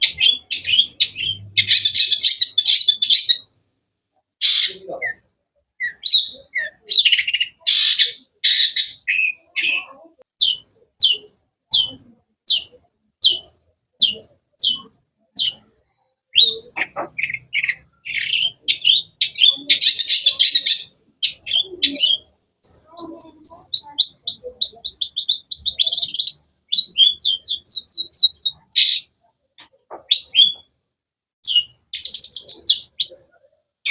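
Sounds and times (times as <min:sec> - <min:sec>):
harsh grating bird calls: 0:00.0 - 0:03.5, 0:04.4 - 0:05.2, 0:05.8 - 0:15.7, 0:16.3 - 0:30.7.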